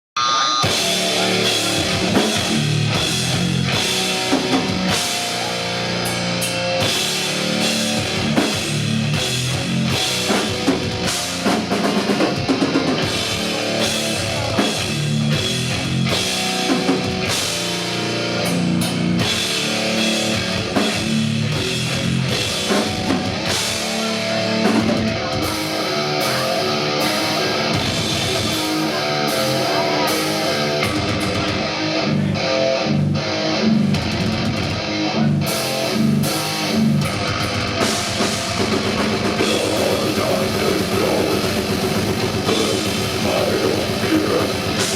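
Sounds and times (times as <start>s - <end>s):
electric guitars: 0.1s - 44.9s
drum kit hammering: 0.6s - 32.3s, 35.4s - 44.9s.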